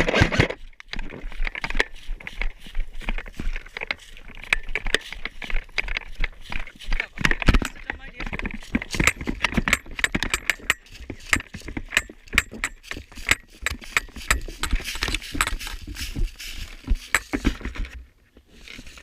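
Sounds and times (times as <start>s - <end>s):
loose gear rattling: 0.0s - 19.0s
footsteps crunching dry leaves: 0.6s - 7.2s, 14.2s - 17.6s.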